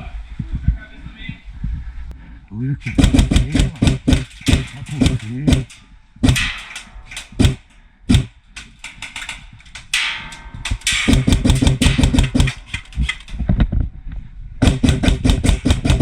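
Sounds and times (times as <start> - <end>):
airsoft guns firing: 2.9 - 8.3, 10.7 - 12.8, 14.6 - 16.0.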